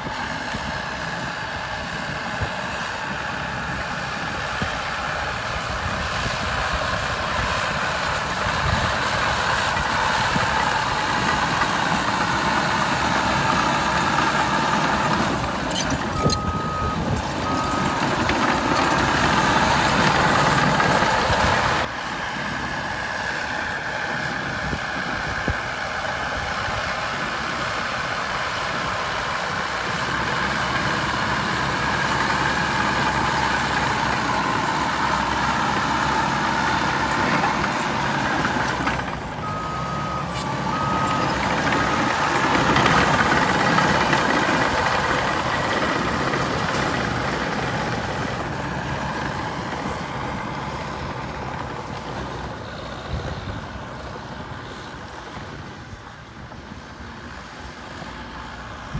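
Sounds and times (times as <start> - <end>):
bulldozer diesel engine: 0.0 - 58.9
track and blade noise: 0.0 - 58.9
short alarm beeps: 16.1 - 18.0.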